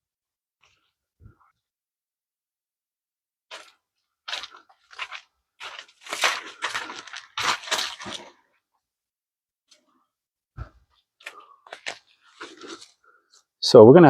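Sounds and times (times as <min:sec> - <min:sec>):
dry vegetation crunching and rustling: 0:03.5 - 0:08.4.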